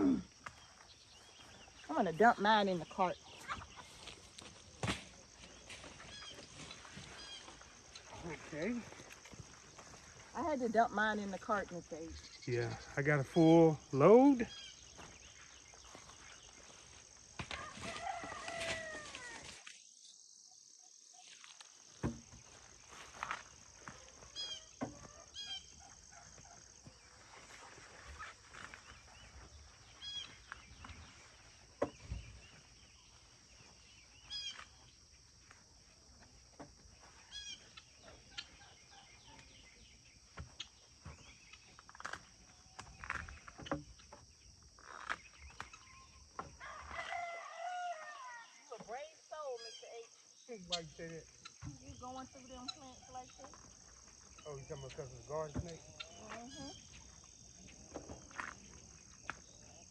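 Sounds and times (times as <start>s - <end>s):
rooster crowing faintly: 17.5s - 19.6s.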